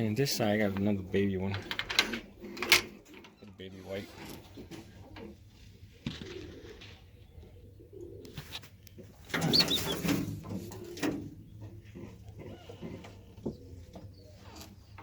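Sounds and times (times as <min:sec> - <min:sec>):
pigeons cooing: 0:04.5 - 0:15.0
noisy burst of pigeon activity: 0:06.0 - 0:11.4.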